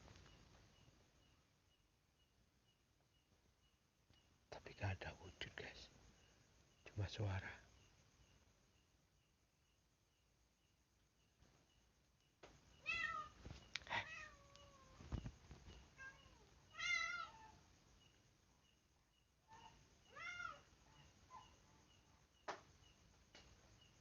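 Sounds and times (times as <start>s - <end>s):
cat meowing: 12.8s - 15.0s, 16.0s - 17.6s, 20.1s - 20.7s.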